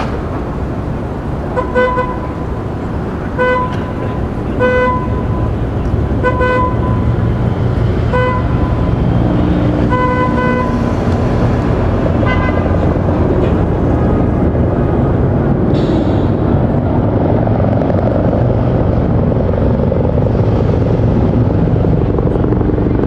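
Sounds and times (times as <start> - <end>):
short horn toots: 0.0 - 9.2
vehicle engines rumbling: 0.0 - 23.0.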